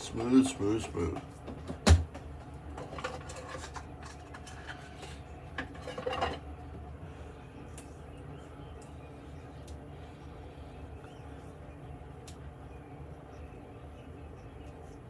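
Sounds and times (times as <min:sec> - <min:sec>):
shaving gear clicks and scrapes: 0:00.0 - 0:01.3.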